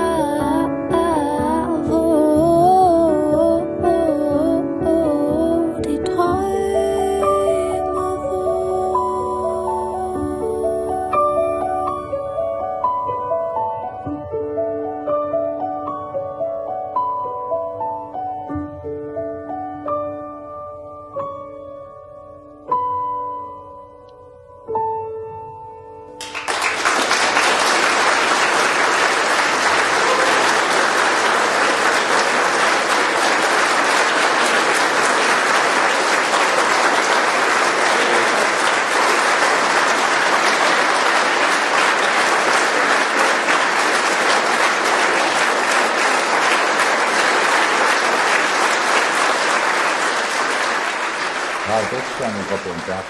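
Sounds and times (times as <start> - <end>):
audience applause: 26.2 - 53.0.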